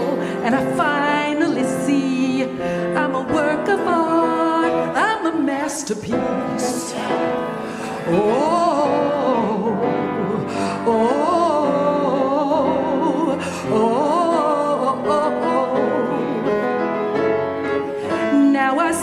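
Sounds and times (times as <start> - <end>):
woman singing wordless run: 0.0 - 7.4, 18.2 - 19.0
piano accompaniment: 0.0 - 19.0.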